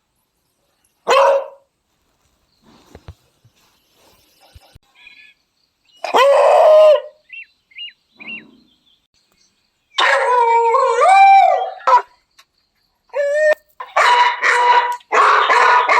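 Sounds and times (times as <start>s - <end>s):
dog barking: 1.1s - 1.7s, 10.0s - 10.4s, 11.5s - 12.2s, 13.8s - 15.9s
dog baying and howling: 6.0s - 7.2s, 10.0s - 12.2s, 13.1s - 15.9s.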